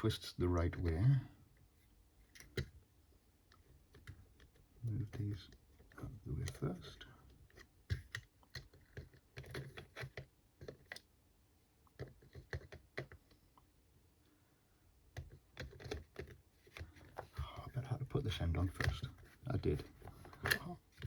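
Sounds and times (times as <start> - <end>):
plastic parts clicking and tapping: 2.3 - 11.1, 11.8 - 13.7, 15.1 - 17.7, 18.3 - 21.0.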